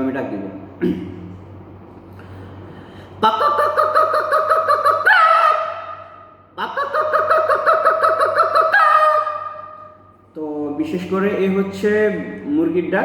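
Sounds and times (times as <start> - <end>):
man imitating hen cackle: 3.2 - 10.0.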